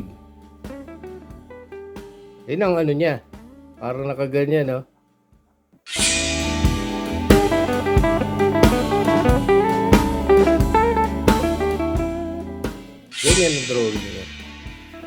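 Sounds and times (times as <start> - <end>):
steady drum beat: 5.9 - 15.0
plucked guitar melody: 6.0 - 15.0.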